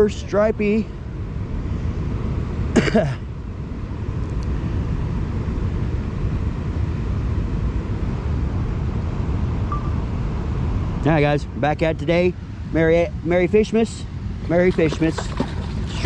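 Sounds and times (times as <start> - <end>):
river water rushing: 14.2 - 16.0.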